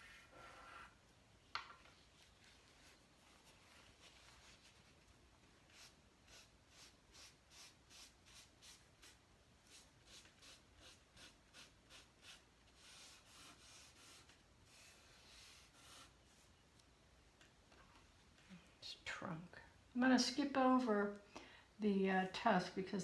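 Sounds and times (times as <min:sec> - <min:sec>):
chalk scratching on paper: 0:05.7 - 0:16.5.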